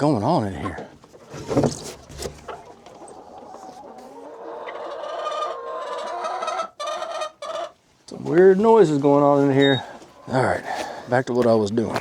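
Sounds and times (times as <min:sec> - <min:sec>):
chicken squawk: 0:02.4 - 0:07.8
hen long drawn-out call: 0:02.5 - 0:07.8.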